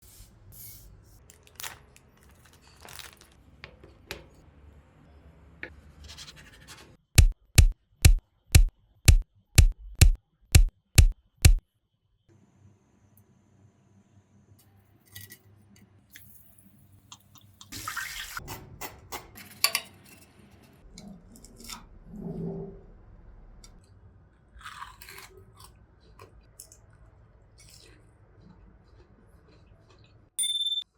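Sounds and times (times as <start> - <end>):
sharp knocks: 7.2 - 11.6
crunchy chewing: 24.6 - 30.2.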